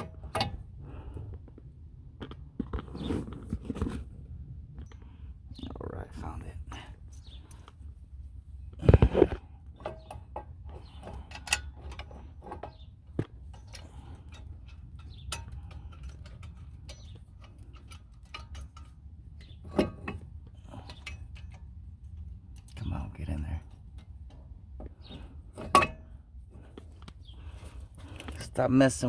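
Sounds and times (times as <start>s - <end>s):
metal hardware clattering: 8.8s - 29.0s.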